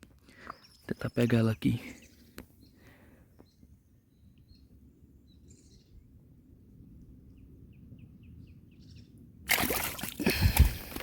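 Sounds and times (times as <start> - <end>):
faint bird chirps: 0.3 - 6.2
water splashing and thrashing: 9.5 - 11.0.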